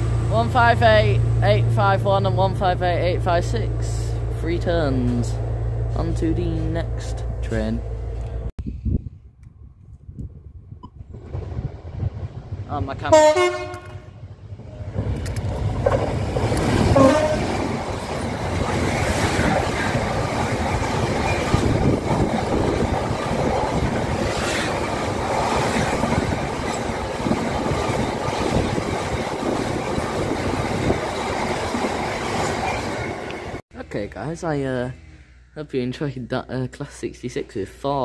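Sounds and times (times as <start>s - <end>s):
freight train passing: 0.0s - 8.5s, 11.1s - 37.8s
train horn: 13.1s - 14.2s, 17.0s - 17.6s.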